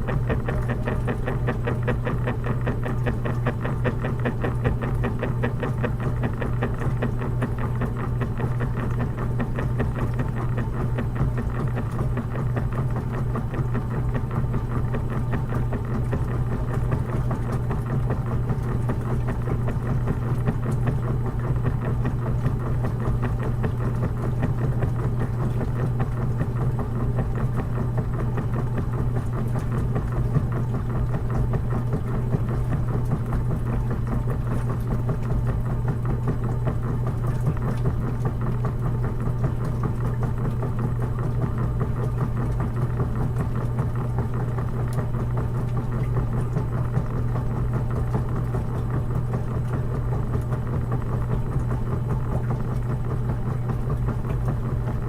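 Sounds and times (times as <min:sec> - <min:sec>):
washing machine humming: 0:00.0 - 0:55.0.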